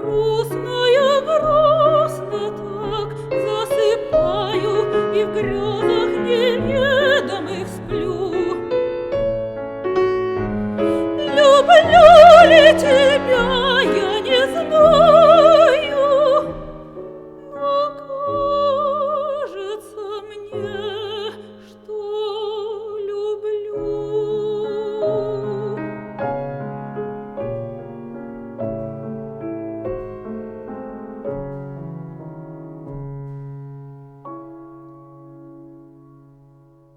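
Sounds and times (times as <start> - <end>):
woman singing with vibrato: 0.0 - 9.0, 10.6 - 26.0
piano accompaniment: 0.0 - 36.9.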